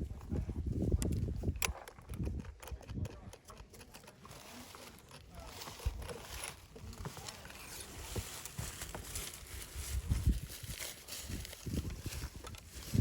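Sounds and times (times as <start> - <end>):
small parts and tools clicking: 0.9 - 6.7.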